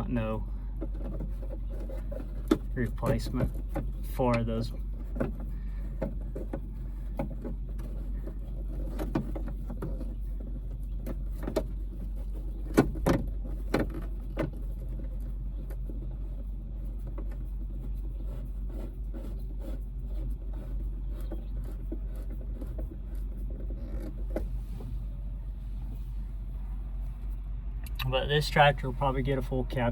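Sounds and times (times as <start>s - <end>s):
low rumble: 22.5s - 29.9s.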